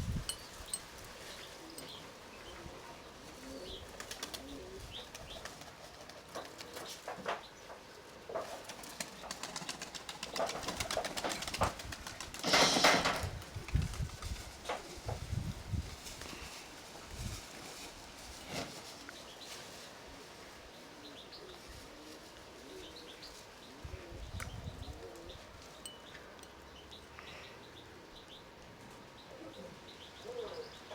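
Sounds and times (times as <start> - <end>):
pigeons cooing: 0.0 - 26.4, 27.2 - 30.9
wing flapping: 3.8 - 7.0, 8.5 - 19.0.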